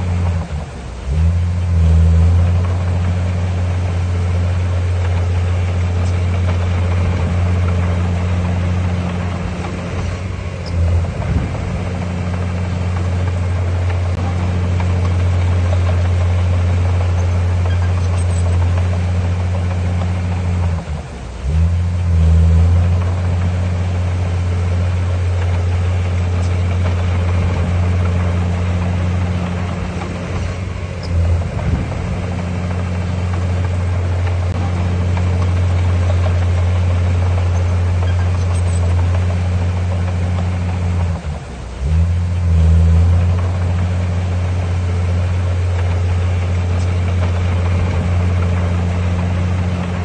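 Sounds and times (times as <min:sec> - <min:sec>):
diesel engine drone: 0:00.0 - 0:50.0.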